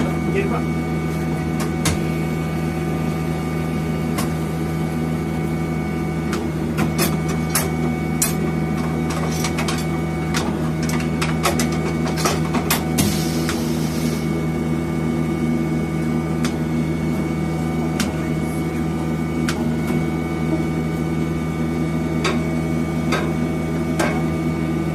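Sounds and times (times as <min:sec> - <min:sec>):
tyre changer motor humming: 0:00.0 - 0:24.9.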